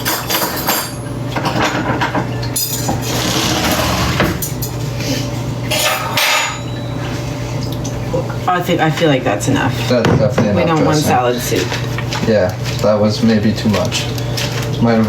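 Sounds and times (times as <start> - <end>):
utensils clinking on dishes: 0.0 - 7.9.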